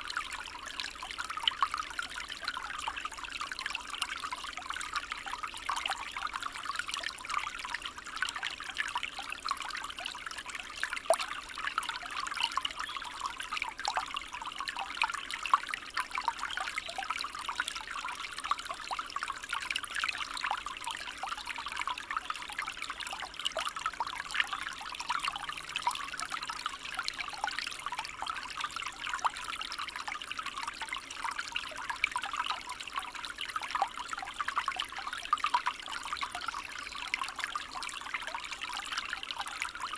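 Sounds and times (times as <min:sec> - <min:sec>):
stream trickling and babbling: 0:00.0 - 0:39.9.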